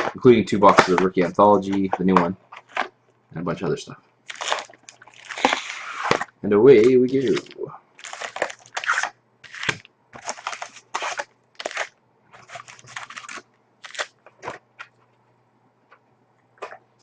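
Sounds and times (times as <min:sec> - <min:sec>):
faint electrical hum: 0:00.0 - 0:17.0
wrappers tearing and crinkling: 0:04.3 - 0:14.2.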